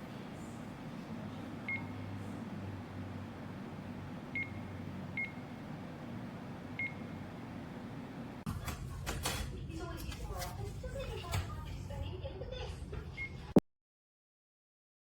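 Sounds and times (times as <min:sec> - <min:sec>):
steady low hum: 0:00.0 - 0:13.6.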